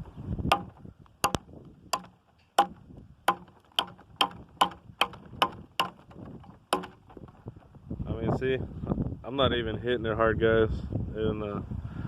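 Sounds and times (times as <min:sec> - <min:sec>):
tomahawk chopping blows: 0:00.0 - 0:07.7.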